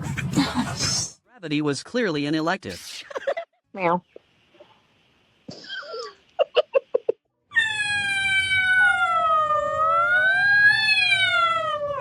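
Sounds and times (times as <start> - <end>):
cat yowling: 7.5 - 12.0.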